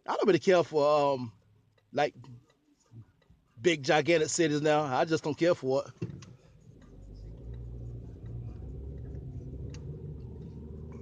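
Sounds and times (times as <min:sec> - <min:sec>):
faint clicks: 0:06.2 - 0:11.0
low steady rumble: 0:06.2 - 0:11.0.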